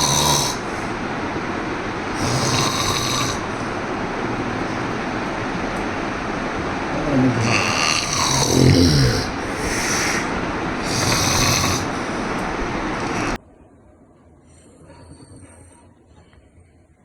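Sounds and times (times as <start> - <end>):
person snoring: 0.0 - 1.0, 2.1 - 5.1, 6.9 - 13.4
hissing breaths: 0.0 - 13.4.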